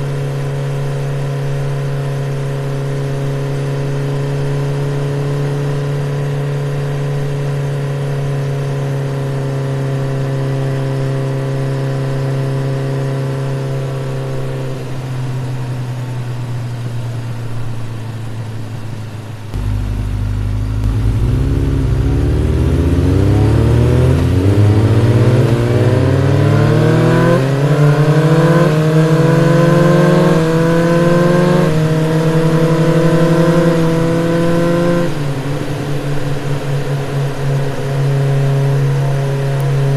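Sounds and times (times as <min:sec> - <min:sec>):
motorcycle engine accelerating: 0:19.5 - 0:39.9.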